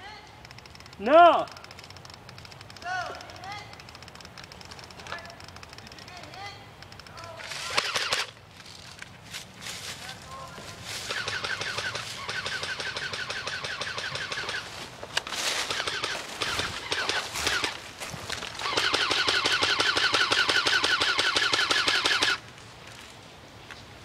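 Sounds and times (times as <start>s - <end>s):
airsoft gun firing full-auto: 7.6s - 8.3s, 11.1s - 14.7s, 15.6s - 17.8s, 18.6s - 22.4s.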